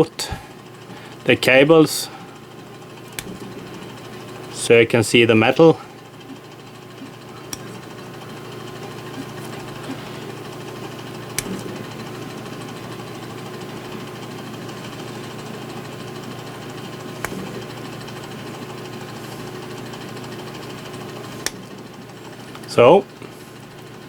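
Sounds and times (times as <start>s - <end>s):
low mechanical hum: 0.0s - 24.0s
sharp clicks: 3.0s - 3.9s, 6.2s - 10.5s, 11.2s - 11.8s, 21.4s - 21.8s.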